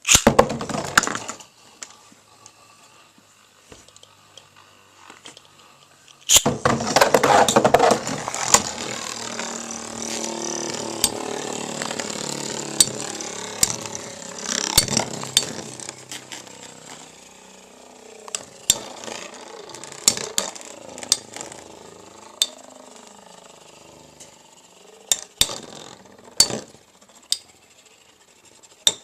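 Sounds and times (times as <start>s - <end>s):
spinning tops whirring and grinding: 0.0s - 29.0s
spinning tops clacking together: 6.2s - 27.7s.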